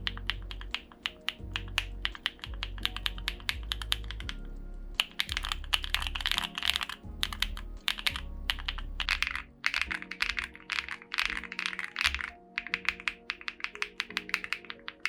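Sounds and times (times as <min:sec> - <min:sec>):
mechanical keyboard typing: 0:00.0 - 0:04.4, 0:05.0 - 0:15.0
background music with bass: 0:00.0 - 0:10.6.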